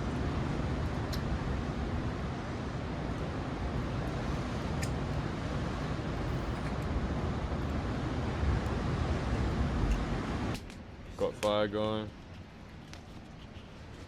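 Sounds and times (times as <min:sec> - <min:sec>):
wind: 0:00.0 - 0:14.0.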